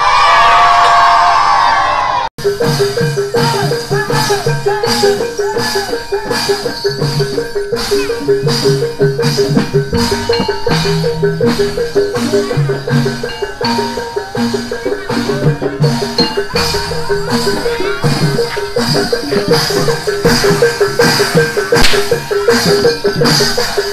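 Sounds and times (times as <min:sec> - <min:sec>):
drum strokes: 0:02.4 - 0:23.9
gamelan mallet-struck metal notes: 0:02.4 - 0:23.9.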